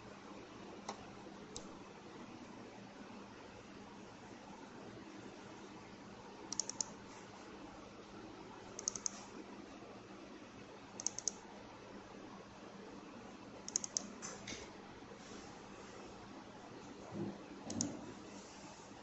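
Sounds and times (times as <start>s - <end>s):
small sharp clicks: 6.5s - 6.9s, 8.8s - 9.2s, 11.0s - 11.4s, 13.7s - 14.1s, 17.7s - 18.0s.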